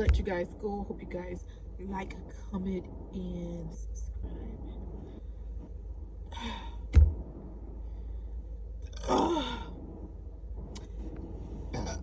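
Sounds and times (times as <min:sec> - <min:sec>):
woman sighing: 0:06.3 - 0:06.8, 0:09.1 - 0:09.8
woman breathing out: 0:06.3 - 0:06.9.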